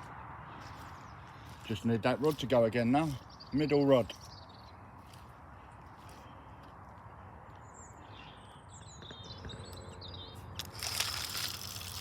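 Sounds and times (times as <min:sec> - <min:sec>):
small birds chirping: 0:00.0 - 0:11.7.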